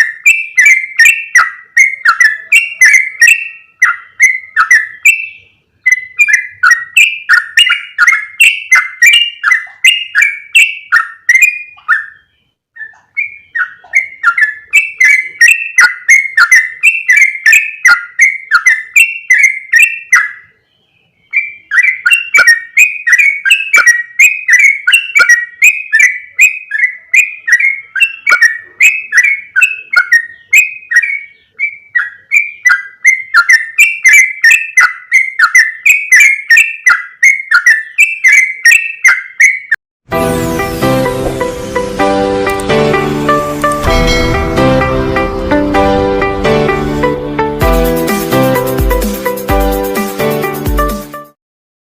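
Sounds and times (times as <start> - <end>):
bird chirping bubbly notes: 0.0 - 20.3.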